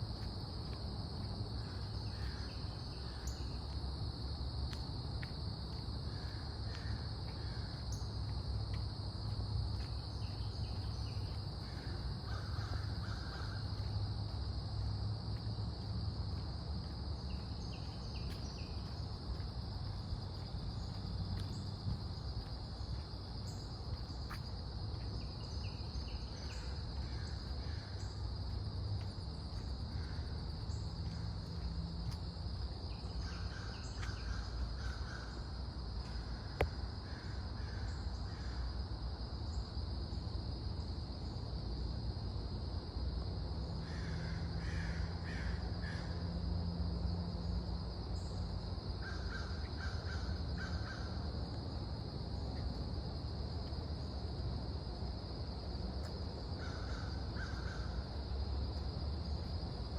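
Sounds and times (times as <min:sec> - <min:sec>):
insects droning: 0:00.0 - 0:59.9
crows cawing: 0:11.6 - 0:13.7, 0:43.8 - 0:46.1, 0:56.6 - 0:57.9.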